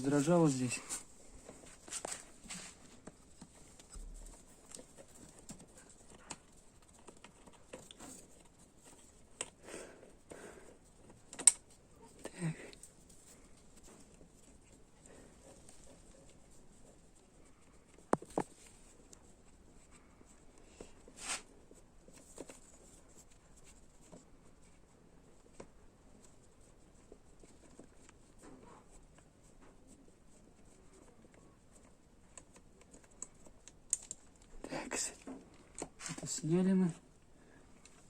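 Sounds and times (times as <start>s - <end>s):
faint handling and rustling: 0.0s - 38.0s.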